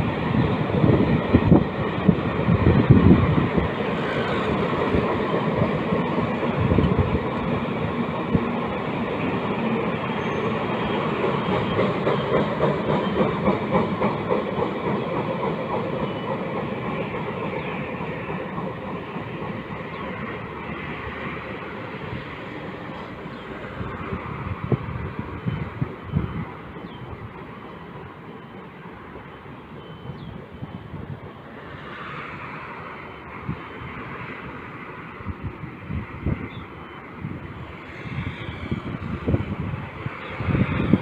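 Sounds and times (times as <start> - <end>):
freight train wheels clattering: 0.0 - 28.0.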